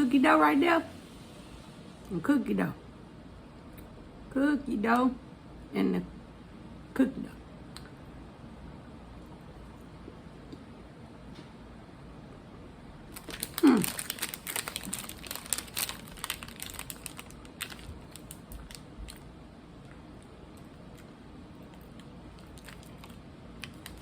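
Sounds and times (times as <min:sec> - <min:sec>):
wrapper crinkling: 0:13.1 - 0:19.2, 0:22.4 - 0:24.0
biting and chewing candy bar: 0:13.1 - 0:24.0.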